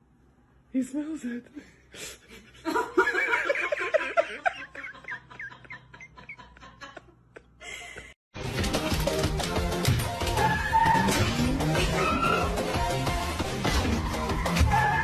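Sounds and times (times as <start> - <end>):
person laughing: 2.0 - 8.2.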